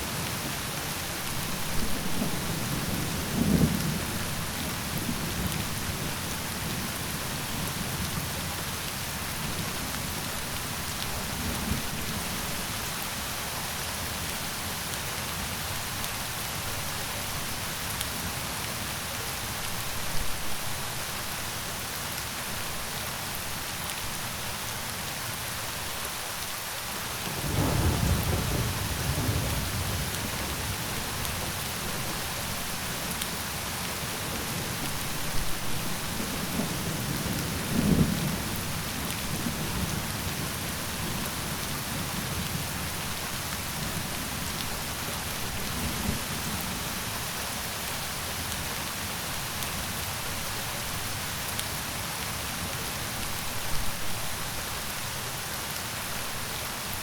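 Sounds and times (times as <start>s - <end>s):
steady rain falling: 0.0s - 57.0s
thunder rumbling: 27.4s - 32.3s.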